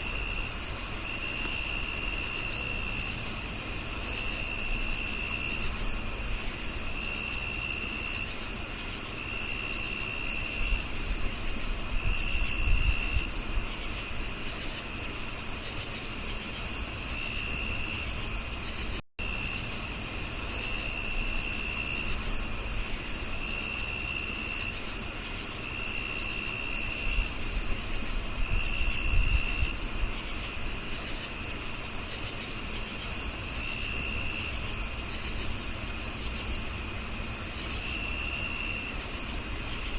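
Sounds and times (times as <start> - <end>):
crickets chirping: 0.0 - 39.9
lower insect trill: 0.0 - 39.9.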